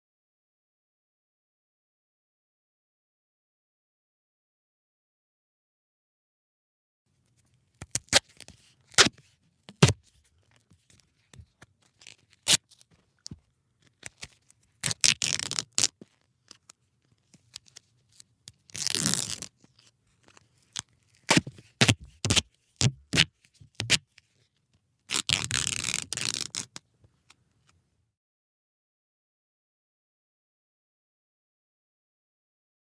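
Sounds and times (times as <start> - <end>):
duct tape snapping and crackling: 7.8 - 10.0
duct tape tearing: 7.8 - 10.0, 12.0 - 12.8, 14.0 - 16.0, 18.7 - 19.5, 25.1 - 26.8.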